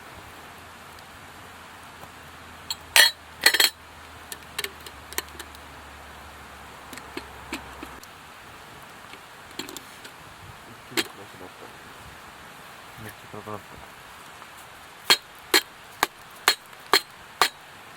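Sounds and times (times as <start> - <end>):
steady faint hiss: 0.0 - 17.9
metal cookware clattering: 2.7 - 3.8, 16.4 - 17.6.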